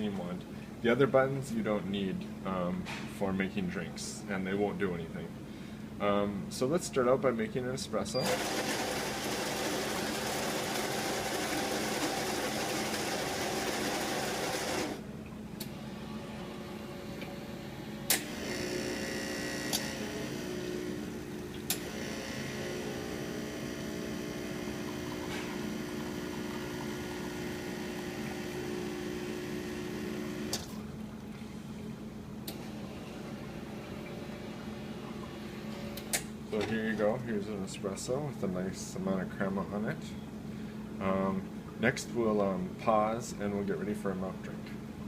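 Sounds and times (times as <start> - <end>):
espresso pump humming: 8.2 - 15.0, 15.7 - 30.8
coffee grinding: 8.3 - 15.0, 24.4 - 30.4.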